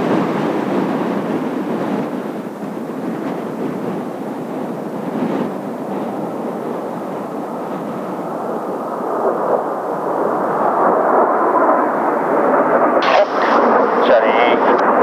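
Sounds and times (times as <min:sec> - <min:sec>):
jet engine roar: 0:00.0 - 0:15.0
voice over radio: 0:13.0 - 0:15.0.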